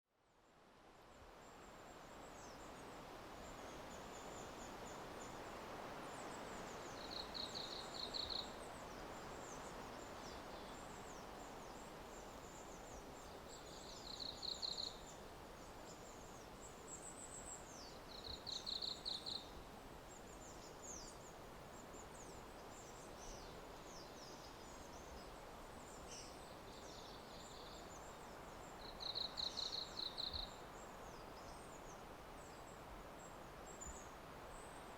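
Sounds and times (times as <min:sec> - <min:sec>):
soft rushing hiss: 0:00.2 - 0:34.9
small birds chirping: 0:06.1 - 0:34.9.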